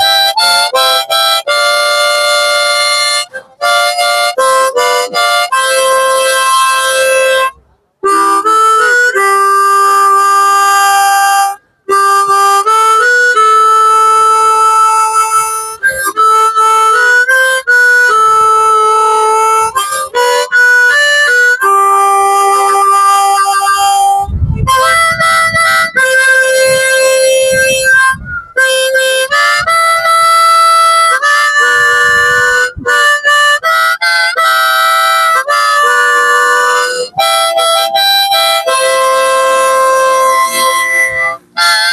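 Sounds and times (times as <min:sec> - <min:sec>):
harmonica melody: 0:00.0 - 0:41.9
low bumps rumbling: 0:23.8 - 0:33.5.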